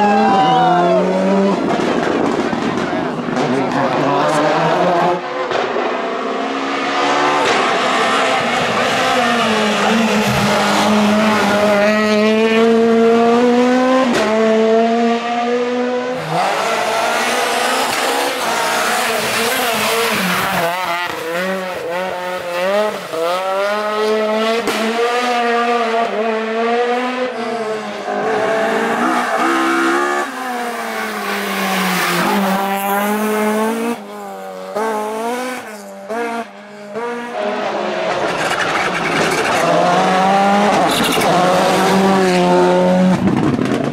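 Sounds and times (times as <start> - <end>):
rally car engines revving: 0.0 - 43.9.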